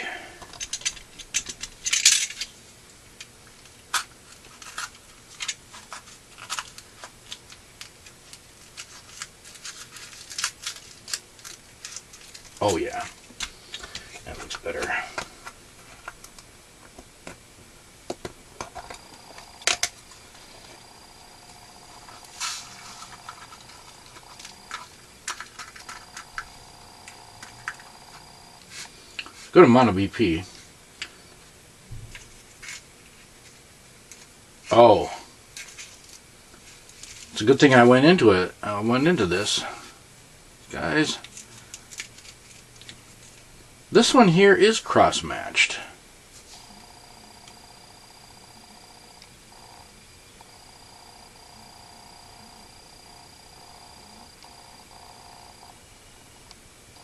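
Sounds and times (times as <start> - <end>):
faint steady high whine: 0.0 - 57.0
hand tools clicking and tapping: 0.4 - 2.4.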